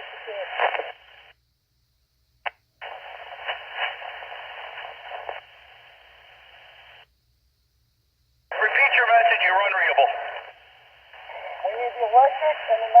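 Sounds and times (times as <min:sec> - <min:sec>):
radio hissing static: 0:00.0 - 0:01.4, 0:02.4 - 0:07.1, 0:08.5 - 0:13.0
radio squelch click: 0:00.0 - 0:01.4, 0:02.4 - 0:07.1, 0:08.5 - 0:11.7.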